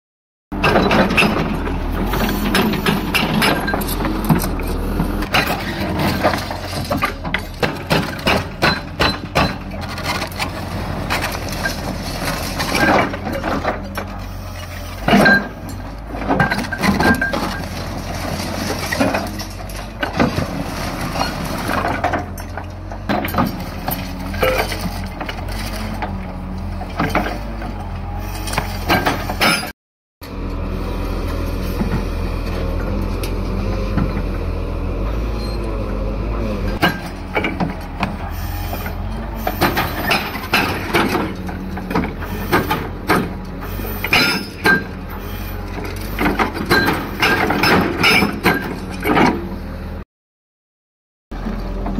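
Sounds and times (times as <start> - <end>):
machinery engine drone: 0.5 - 8.8, 30.2 - 47.7.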